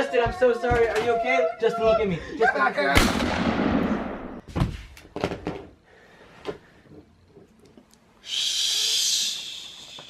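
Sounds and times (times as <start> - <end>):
loud hiss: 8.2 - 10.0.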